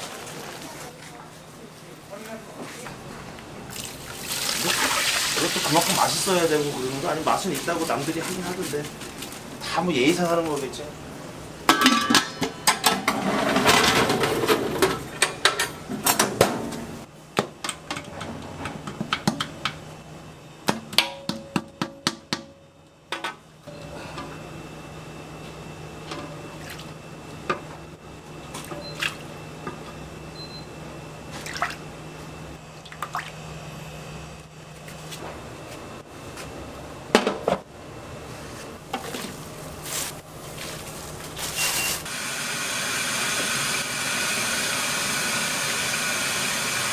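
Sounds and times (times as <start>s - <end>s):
utensils and dishes clattering: 11.7s - 16.3s
steady low hum: 14.2s - 42.1s.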